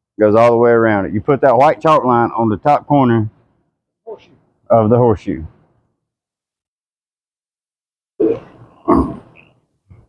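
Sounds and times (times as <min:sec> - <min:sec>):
short vocal sounds from person: 0:08.2 - 0:09.4.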